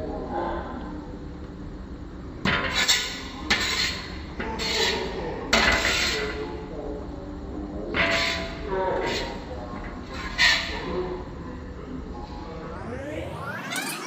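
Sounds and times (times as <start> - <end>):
metal utensil scraping a pan: 2.5 - 6.5, 7.9 - 10.9.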